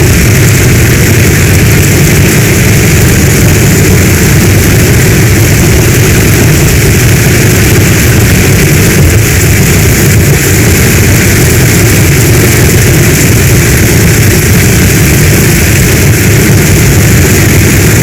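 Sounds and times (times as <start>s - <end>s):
deep rumble: 0.0s - 18.0s
heavy rain downpour: 0.0s - 18.0s.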